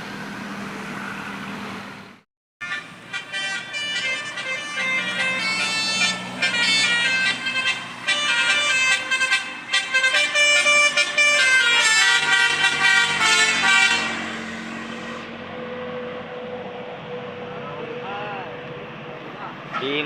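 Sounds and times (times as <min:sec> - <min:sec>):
bus engine: 0:00.0 - 0:20.0
road noise: 0:00.0 - 0:20.0
bus horn playing multi-tone melody: 0:02.6 - 0:15.9, 0:19.7 - 0:20.0.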